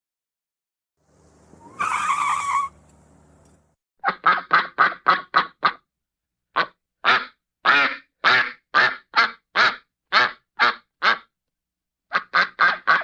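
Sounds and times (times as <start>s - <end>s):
car engine running: 1.0s - 3.8s
car tires squealing: 1.3s - 2.9s
duck quacking: 4.0s - 5.8s, 6.6s - 11.3s, 12.1s - 13.0s.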